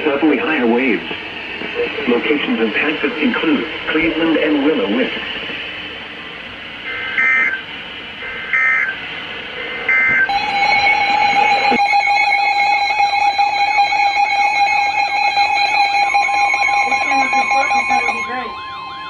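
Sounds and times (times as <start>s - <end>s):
loud steady alert tone: 6.8s - 9.0s, 9.9s - 19.0s
screeching digital data tones: 6.9s - 9.0s, 9.9s - 19.0s.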